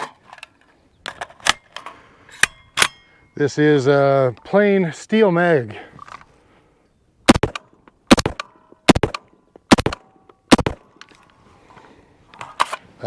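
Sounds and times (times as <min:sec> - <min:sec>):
rifle shots: 0:07.3 - 0:10.9.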